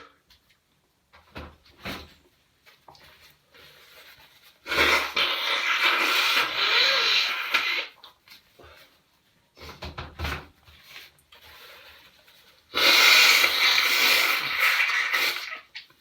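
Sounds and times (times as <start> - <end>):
man blowing his nose: 4.6 - 8.0, 12.7 - 15.7.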